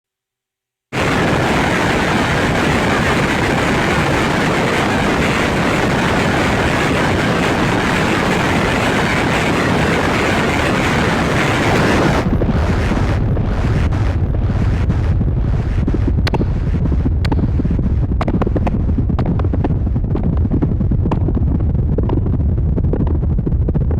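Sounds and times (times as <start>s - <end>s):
distorted synthesizer noise: 0.9s - 23.9s.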